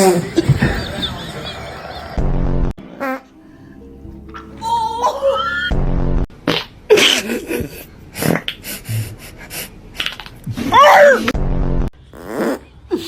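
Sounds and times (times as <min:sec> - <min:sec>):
squeaky gliding sounds: 0:00.0 - 0:03.3
low buzzy fart blast: 0:05.7 - 0:06.7, 0:11.4 - 0:12.8.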